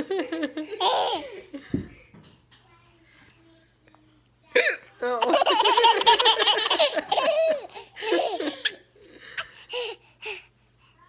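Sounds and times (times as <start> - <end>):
baby laughing: 0.8 - 1.3, 5.2 - 8.8.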